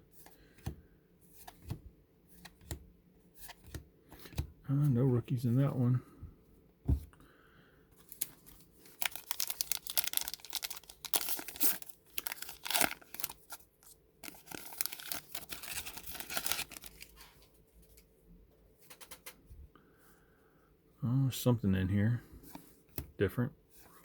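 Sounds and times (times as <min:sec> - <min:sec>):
plastic wrapper crinkling: 0:08.0 - 0:17.3.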